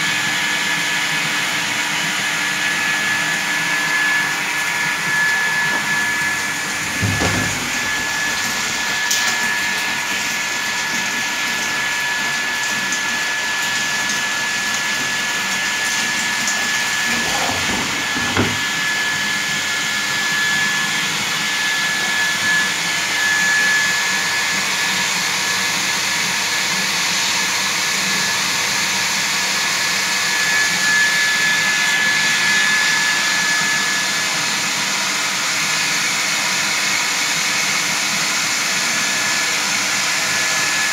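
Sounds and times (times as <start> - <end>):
pump motor whine: 0.0 - 40.9
water rushing: 4.4 - 14.1, 14.7 - 18.8.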